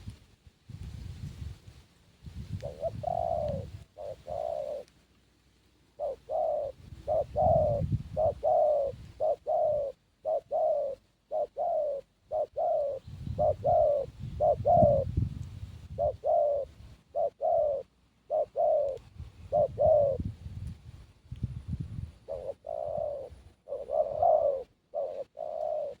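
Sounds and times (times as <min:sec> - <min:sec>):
dove cooing: 0:02.5 - 0:04.9, 0:05.9 - 0:20.4, 0:22.1 - 0:26.0.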